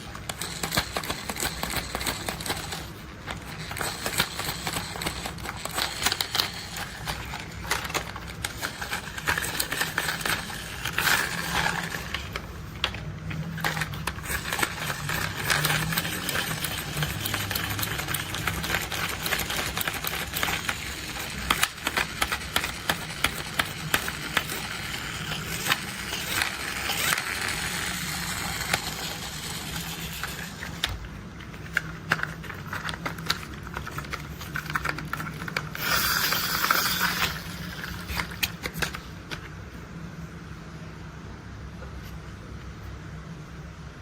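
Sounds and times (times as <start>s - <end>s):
plastic toy parts clicking and rattling: 0.0s - 39.4s
steady low hum: 0.0s - 44.0s.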